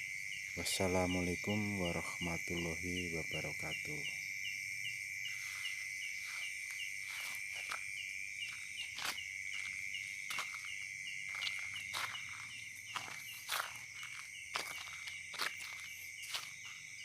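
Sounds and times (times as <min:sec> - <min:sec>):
crickets trilling: 0:00.0 - 0:17.0
short insect chirp: 0:00.0 - 0:17.0
footsteps: 0:05.3 - 0:17.0.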